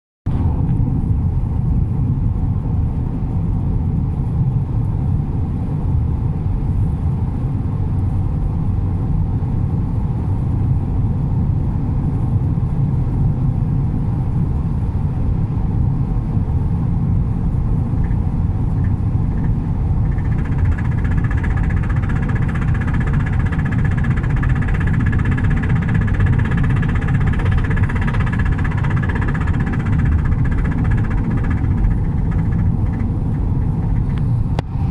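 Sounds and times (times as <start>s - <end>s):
road and engine rumble: 0.3s - 34.9s
higher-pitched cabin noise: 17.5s - 34.9s.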